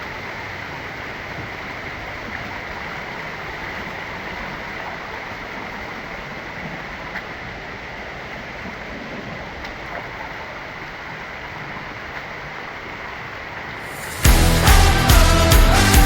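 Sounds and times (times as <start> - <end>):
water rushing: 13.8 - 16.0.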